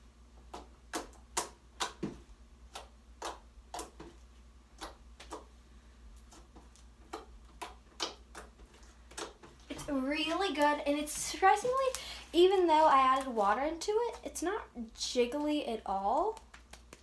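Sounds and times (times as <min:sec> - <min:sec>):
slime clicking and popping: 0:02.7 - 0:04.0, 0:07.1 - 0:09.4, 0:16.2 - 0:17.0.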